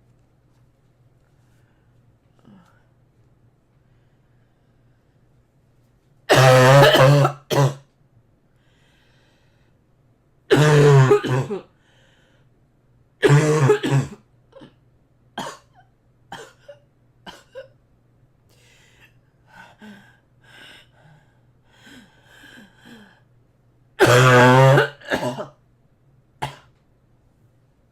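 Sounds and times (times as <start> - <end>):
breathing: 1.3 - 3.0, 3.8 - 5.4, 8.5 - 9.9, 11.7 - 12.6, 18.5 - 23.3
girl coughing: 6.3 - 7.8, 10.5 - 11.7, 13.2 - 14.8, 15.4 - 17.8, 24.0 - 25.6.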